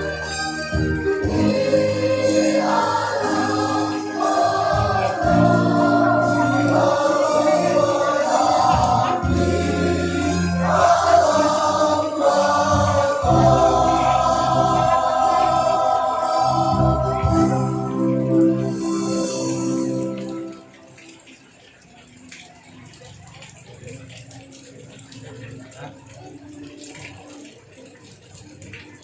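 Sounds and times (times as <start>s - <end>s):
choir singing long notes: 0.0s - 20.9s.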